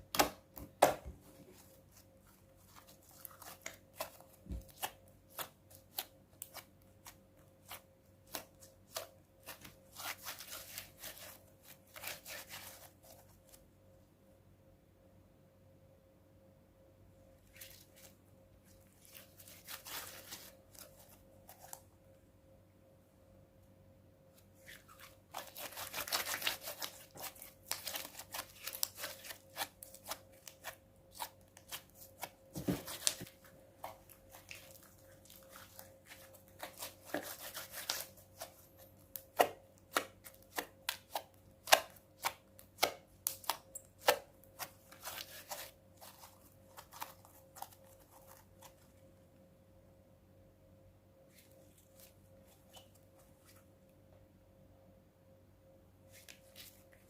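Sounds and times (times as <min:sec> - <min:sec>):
slime sticky crackling: 0:01.5 - 0:13.2, 0:24.8 - 0:48.8.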